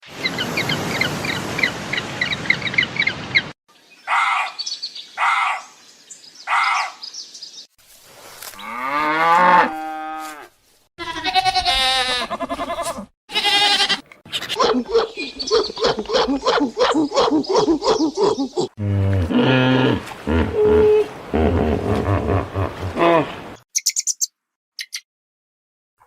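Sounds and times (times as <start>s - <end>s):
cow mooing: 8.6s - 10.5s
rapid chirping: 23.8s - 25.0s.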